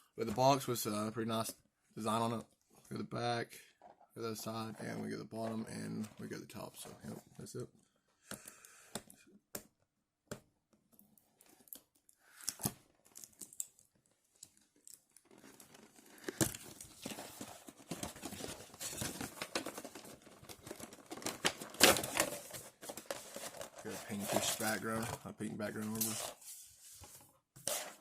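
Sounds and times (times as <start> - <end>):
packaging crinkling and tearing: 14.8 - 25.0
box clicks and rustles: 15.0 - 26.4.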